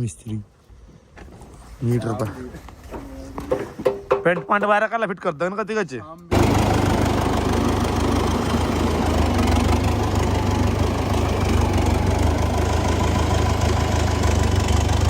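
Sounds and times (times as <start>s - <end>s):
tractor diesel engine running: 6.3s - 15.0s.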